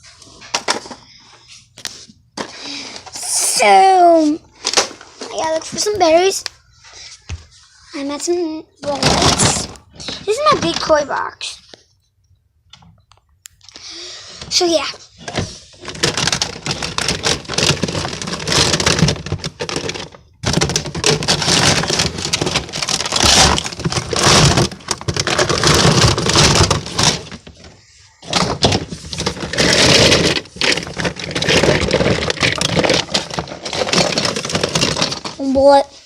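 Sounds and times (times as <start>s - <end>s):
plastic toys clattering: 0.4s - 1.2s, 8.8s - 11.6s, 14.4s - 35.9s.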